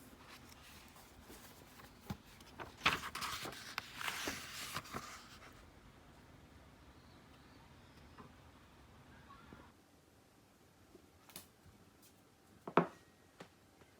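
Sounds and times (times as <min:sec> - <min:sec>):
rustling: 0:00.0 - 0:05.6.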